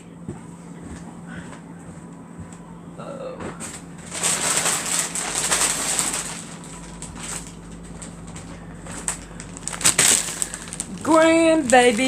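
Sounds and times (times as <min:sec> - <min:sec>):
plastic packaging crinkling: 0:04.0 - 0:12.0.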